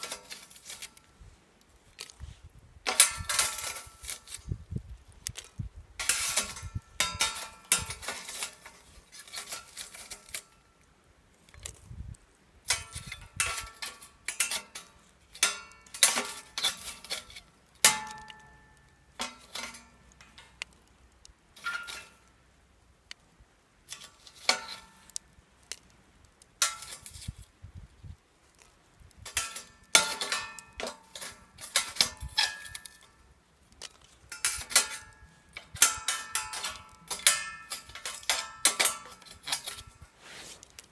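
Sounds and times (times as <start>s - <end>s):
metal cookware clinking: 6.0s - 10.4s, 12.7s - 20.5s, 21.6s - 22.2s, 29.3s - 33.2s, 34.2s - 40.0s.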